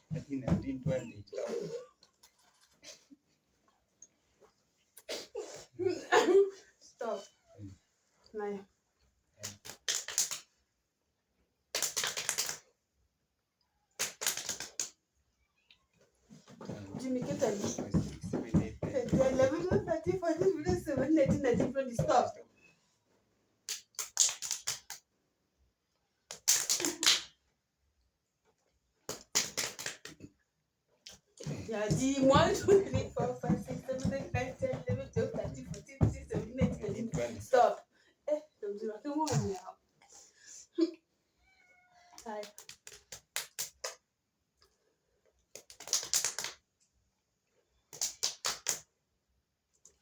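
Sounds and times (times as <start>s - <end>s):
sharp cracks or slaps: 9.4s - 10.5s, 11.7s - 12.6s, 14.0s - 15.0s, 23.7s - 25.0s, 26.3s - 27.3s, 29.1s - 30.3s, 42.5s - 44.0s, 45.6s - 46.6s, 47.9s - 48.8s
quick sharp taps: 16.5s - 22.2s, 31.4s - 37.5s.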